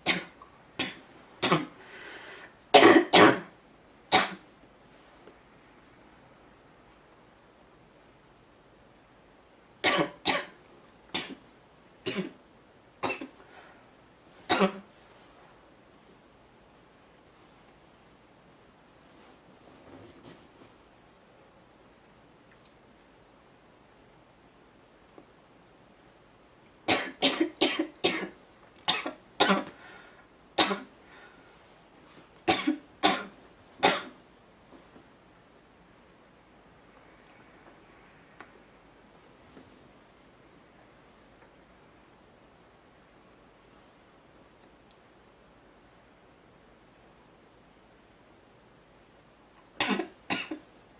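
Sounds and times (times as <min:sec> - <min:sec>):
woman coughing: 0:00.0 - 0:01.8, 0:02.8 - 0:03.5, 0:14.5 - 0:14.9, 0:30.6 - 0:30.9, 0:32.5 - 0:34.1, 0:49.8 - 0:50.6.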